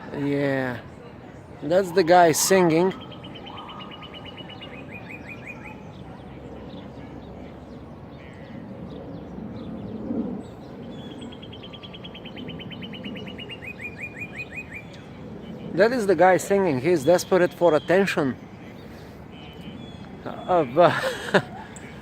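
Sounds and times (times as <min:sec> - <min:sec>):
low city hum: 0:00.0 - 0:22.0
songbird trilling: 0:02.9 - 0:05.9, 0:10.9 - 0:15.2.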